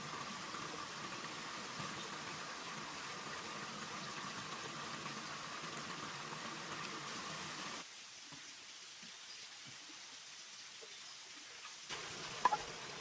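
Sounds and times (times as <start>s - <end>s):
water hissing: 11.9s - 13.0s.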